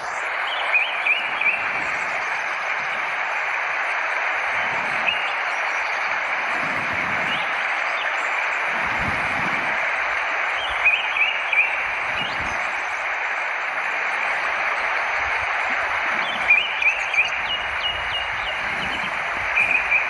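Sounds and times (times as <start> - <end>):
bird chirping: 0.0 - 2.4, 10.6 - 12.7, 16.2 - 20.0
running water rushing: 0.0 - 20.0.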